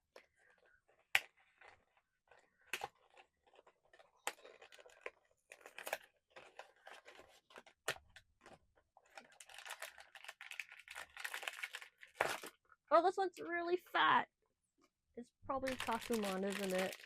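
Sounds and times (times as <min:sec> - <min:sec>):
packaging rustling and tearing: 0:00.6 - 0:12.6, 0:15.6 - 0:17.0
packaging clicks: 0:15.6 - 0:17.0.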